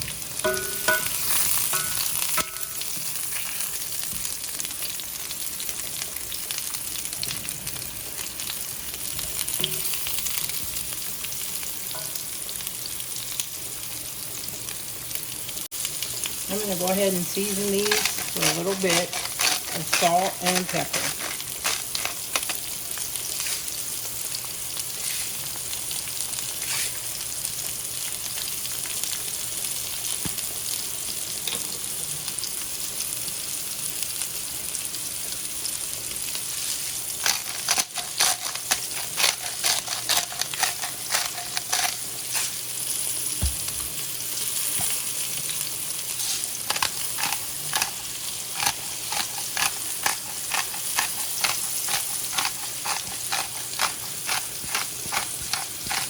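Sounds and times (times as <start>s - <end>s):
beets sizzling in oil: 0.0s - 56.0s
wooden spatula scraping a pan: 17.3s - 22.7s, 36.7s - 42.6s, 48.6s - 56.0s.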